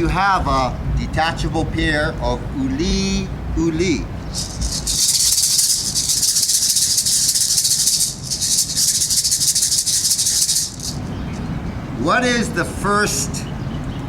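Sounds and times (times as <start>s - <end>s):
gourd rattles shaken: 4.3s - 11.1s.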